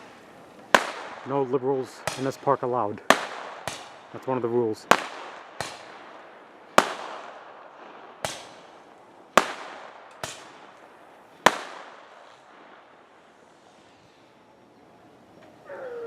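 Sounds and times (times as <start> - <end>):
fireworks bangs: 0.0 - 14.1.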